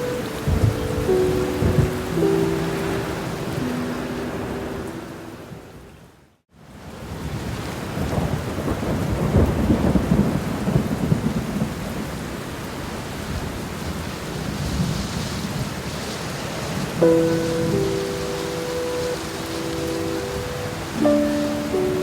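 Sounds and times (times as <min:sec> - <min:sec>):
rolling thunder: 0:00.0 - 0:04.0, 0:08.0 - 0:12.2
steady rain: 0:00.0 - 0:22.0.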